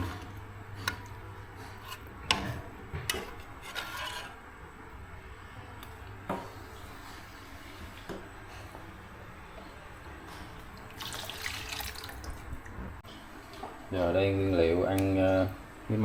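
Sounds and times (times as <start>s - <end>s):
low background hum: 0.0s - 16.0s
rubbing and scraping: 1.6s - 4.4s.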